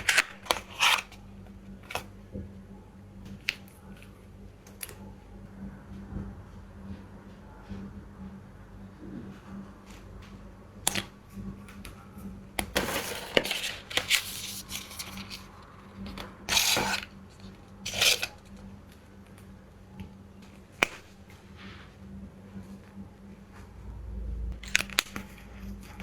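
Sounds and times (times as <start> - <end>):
packaging rustling and scraping: 0.0 - 1.2, 12.6 - 18.6
low electrical hum: 0.0 - 26.0.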